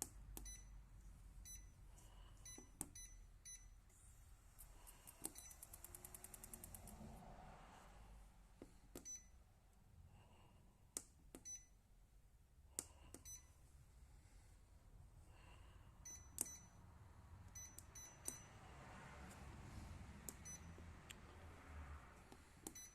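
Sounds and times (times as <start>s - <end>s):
keypad key clicks: 4.9s - 7.0s, 16.1s - 16.6s, 20.2s - 20.9s.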